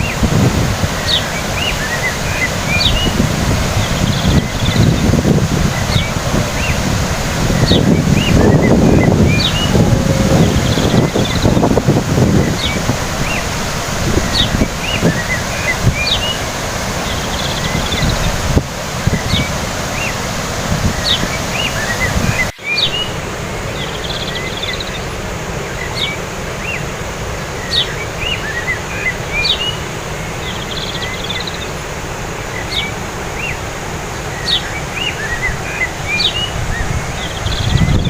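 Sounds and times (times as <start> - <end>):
low wind gusts rumbling: 0.0 - 22.5, 36.0 - 38.0
birds chirping: 0.0 - 38.0
steady rushing noise: 0.0 - 38.0
buzzy bird trill: 7.5 - 11.8.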